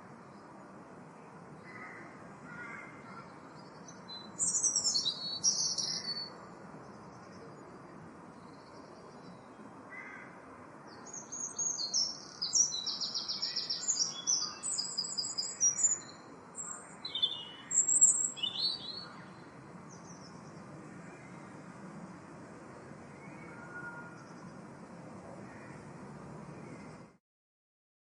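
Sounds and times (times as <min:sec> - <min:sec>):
steady background hiss: 0:00.0 - 0:27.2
blackbird singing: 0:03.0 - 0:06.3, 0:10.9 - 0:20.4.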